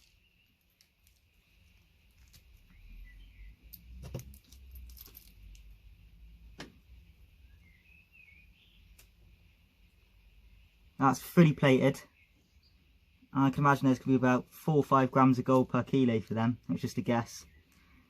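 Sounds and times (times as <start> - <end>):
metallic clinks of connectors handled: 3.7 - 5.7.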